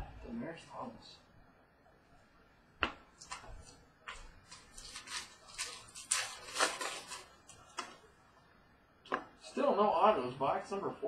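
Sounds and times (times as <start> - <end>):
cards rustling and sliding: 3.2 - 7.9.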